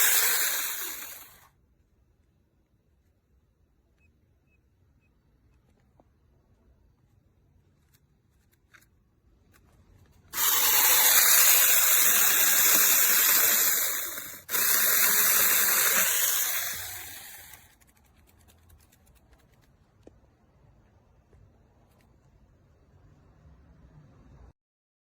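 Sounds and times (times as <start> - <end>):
loud steady hiss: 0.0 - 1.4, 10.4 - 17.6.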